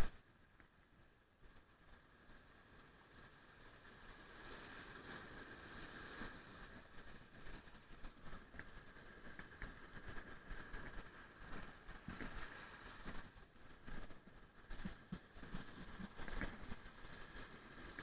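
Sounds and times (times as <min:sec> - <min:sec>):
wind: 0:00.0 - 0:18.0
surf: 0:01.4 - 0:18.0
small ticks: 0:07.4 - 0:16.8.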